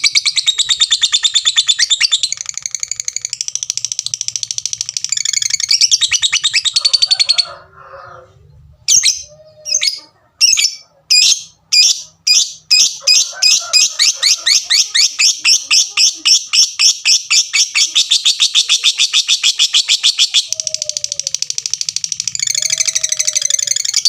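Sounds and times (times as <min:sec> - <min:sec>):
bird chattering trill: 0:00.0 - 0:07.5, 0:08.9 - 0:24.0
sharp bird calls: 0:00.0 - 0:07.6, 0:08.8 - 0:24.0.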